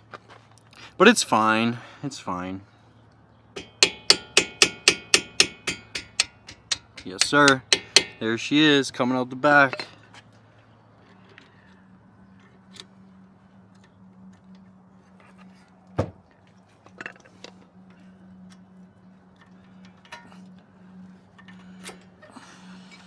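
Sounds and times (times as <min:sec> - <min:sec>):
steady low hum: 0:03.5 - 0:08.5
sharp knock: 0:03.6 - 0:08.2
screwdriver clicking on brake caliper: 0:03.6 - 0:08.3.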